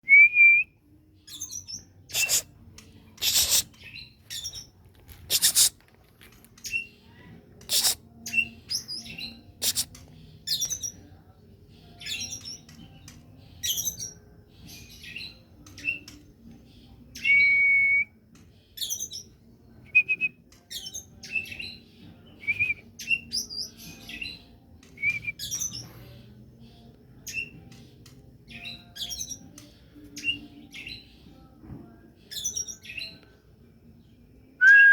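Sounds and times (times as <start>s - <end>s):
bird singing chirps and whistles: 0.0s - 2.5s, 3.2s - 4.7s, 7.7s - 11.0s, 12.0s - 16.2s, 17.1s - 18.2s, 18.8s - 26.0s, 27.2s - 27.8s, 28.5s - 31.4s, 32.2s - 33.2s, 34.6s - 34.9s
harsh rasping bird notes: 2.1s - 2.5s, 3.2s - 3.8s, 5.3s - 5.8s, 7.6s - 8.4s, 9.6s - 10.0s.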